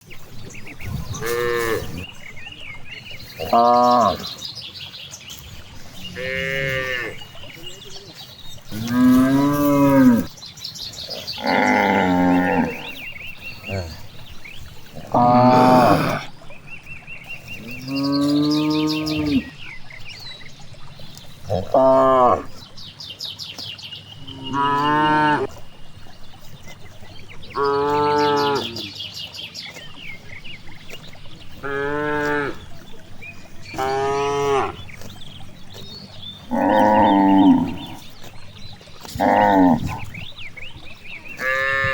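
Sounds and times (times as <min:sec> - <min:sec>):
cows mooing: 0:01.1 - 0:02.1, 0:05.8 - 0:07.4, 0:08.6 - 0:10.3, 0:11.4 - 0:19.6, 0:21.4 - 0:22.6, 0:24.2 - 0:25.6, 0:27.3 - 0:28.9, 0:30.8 - 0:32.8, 0:33.4 - 0:35.7, 0:36.4 - 0:38.3, 0:39.0 - 0:40.6, 0:41.3 - 0:41.9.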